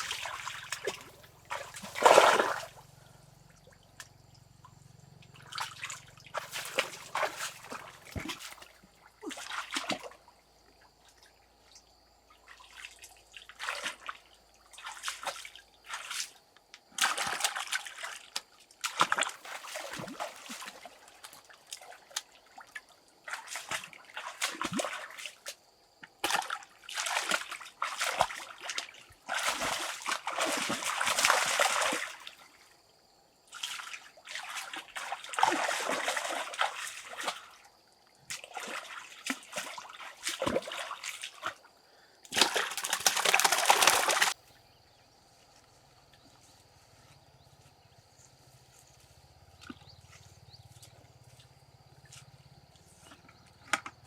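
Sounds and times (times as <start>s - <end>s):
water splashing and sloshing: 0.0s - 4.2s, 5.3s - 11.4s, 12.4s - 16.4s, 17.0s - 32.6s, 33.5s - 44.8s.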